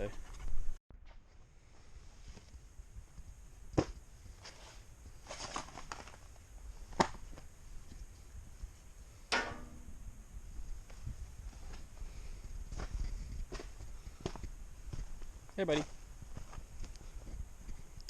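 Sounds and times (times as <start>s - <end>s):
rustling: 0.2s - 8.2s
heavy knock with ringing tail: 9.3s - 10.3s.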